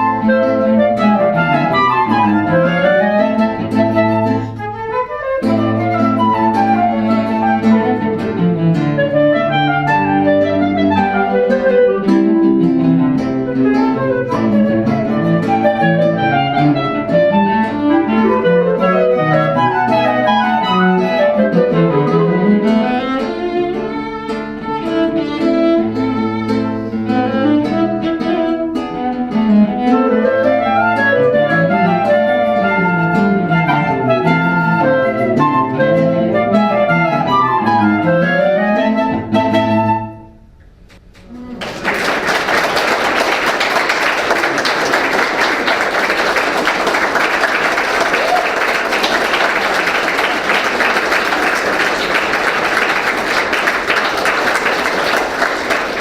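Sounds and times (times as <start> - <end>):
instrumental music: 0.0 - 41.6.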